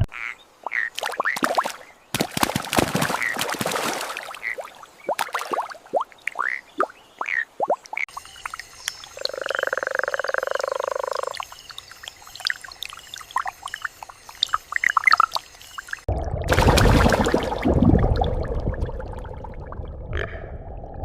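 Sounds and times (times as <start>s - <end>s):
frogs chirping and clicking: 4.3s - 16.1s
bullfrog pulsed croak: 7.2s - 15.8s, 20.1s - 20.6s.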